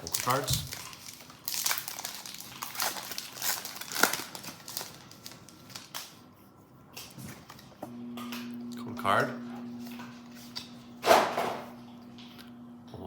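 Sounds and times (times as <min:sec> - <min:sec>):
foil wrapper crinkling and tearing: 0:00.0 - 0:06.2.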